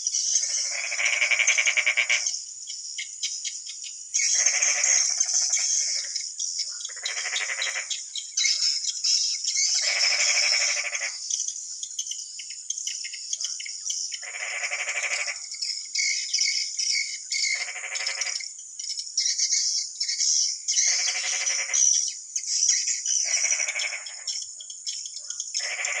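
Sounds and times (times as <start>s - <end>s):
frog buzzing croak: 0.5s - 2.4s, 4.4s - 6.2s, 6.9s - 7.9s, 9.8s - 11.2s, 14.2s - 15.4s, 17.6s - 18.5s, 20.9s - 21.8s, 23.3s - 24.4s, 25.6s - 26.0s.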